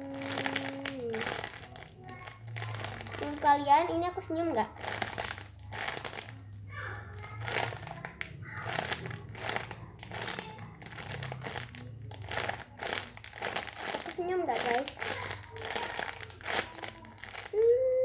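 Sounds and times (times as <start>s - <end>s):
plastic packaging crinkling: 0.0s - 17.8s.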